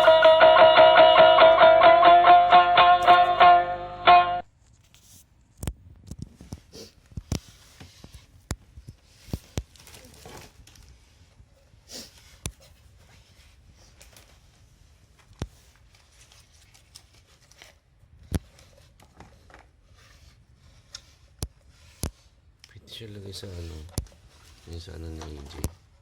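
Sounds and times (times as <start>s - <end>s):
packaging rustling: 9.2s - 11.0s.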